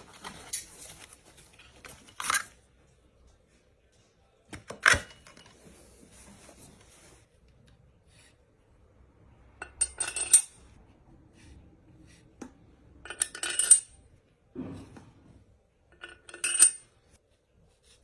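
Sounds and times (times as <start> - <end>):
metal parts clinking and rattling: 9.7 - 10.6, 13.0 - 14.0, 15.9 - 16.9.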